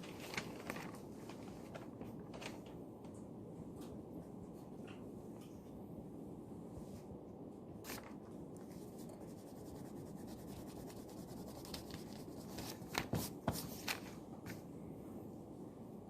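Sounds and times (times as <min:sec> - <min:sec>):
room hum: 0:00.0 - 0:16.0
pen scratching on paper: 0:08.8 - 0:13.6.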